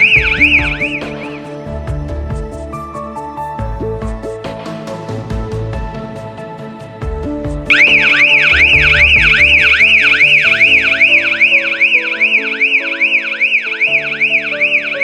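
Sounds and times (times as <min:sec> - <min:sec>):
background music: 0:00.0 - 0:15.0
burglar alarm siren warbling: 0:07.7 - 0:11.0.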